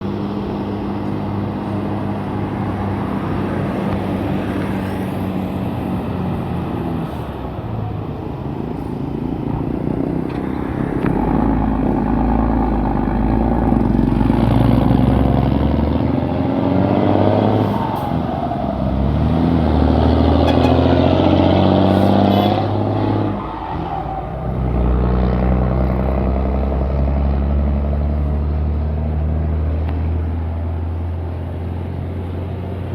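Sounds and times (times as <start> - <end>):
truck diesel engine revving: 8.6 - 32.9.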